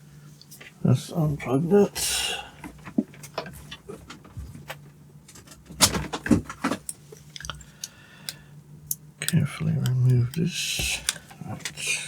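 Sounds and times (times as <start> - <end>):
faint low hum: 0.0 - 12.0
plastic parts clicking: 8.3 - 11.9.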